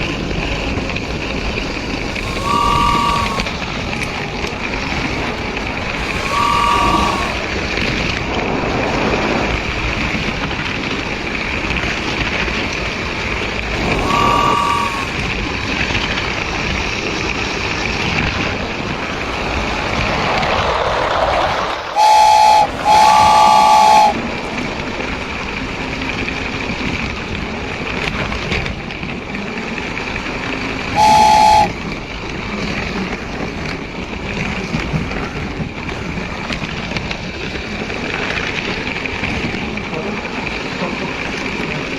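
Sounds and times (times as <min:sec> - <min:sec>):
short high toot: 0:02.2 - 0:03.6, 0:06.0 - 0:07.4, 0:13.8 - 0:15.2, 0:22.0 - 0:24.2, 0:31.0 - 0:31.8
train horn blasts: 0:02.2 - 0:03.6, 0:06.0 - 0:07.5, 0:13.7 - 0:15.2, 0:22.0 - 0:24.2, 0:30.9 - 0:31.8
train rumble: 0:22.0 - 0:24.2, 0:31.0 - 0:31.8.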